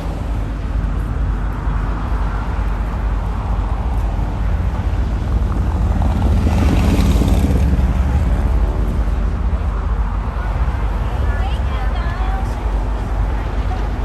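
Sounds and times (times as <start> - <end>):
steady low rumble: 0.0 - 14.0
propeller plane flying by: 3.2 - 11.6.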